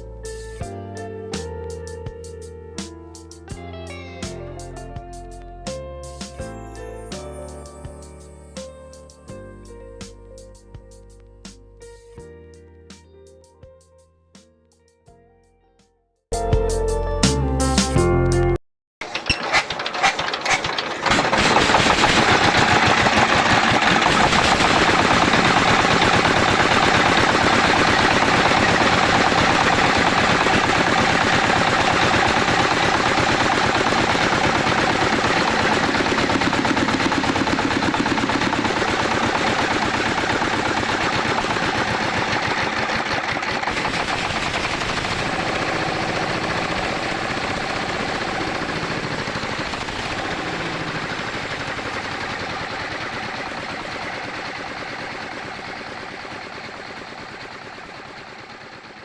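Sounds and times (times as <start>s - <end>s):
diesel engine running: 19.0s - 59.0s.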